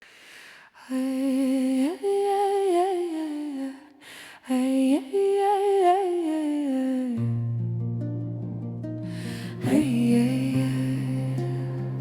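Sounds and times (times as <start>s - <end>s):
person humming a melody: 9.4s - 12.0s.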